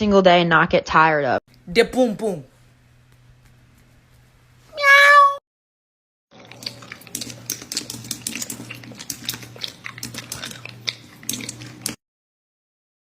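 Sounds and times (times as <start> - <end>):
steady low hum: 1.5 - 4.8.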